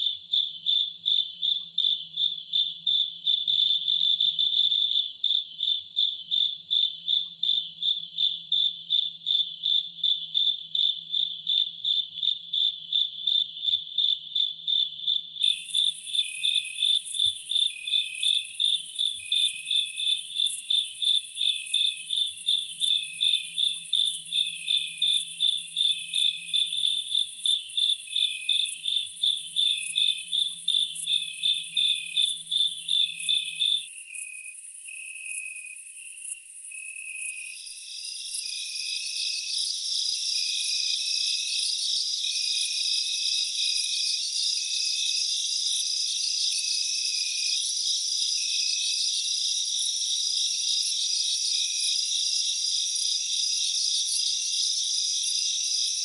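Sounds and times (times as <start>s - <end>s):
higher insect call: 15.4s - 56.0s
insects chirping in pulses: 15.4s - 56.0s.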